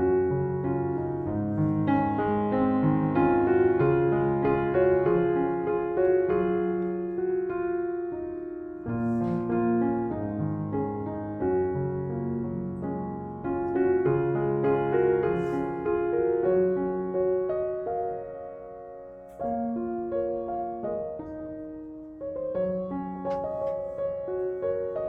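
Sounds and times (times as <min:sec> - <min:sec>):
soft piano chords: 0:00.0 - 0:25.0
faint hiss: 0:14.8 - 0:25.0.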